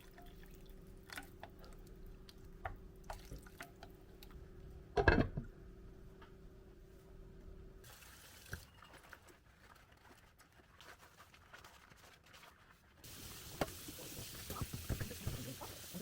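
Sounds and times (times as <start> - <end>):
low steady hum: 0.0 - 7.9.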